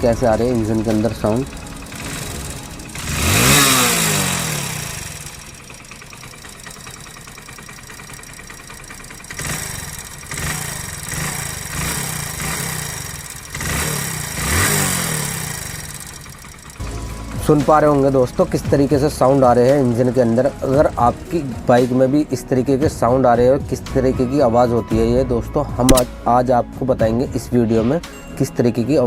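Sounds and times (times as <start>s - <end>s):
mechanical engine noise: 0.0s - 21.7s
motorcycle engine revving and idling: 0.0s - 25.1s.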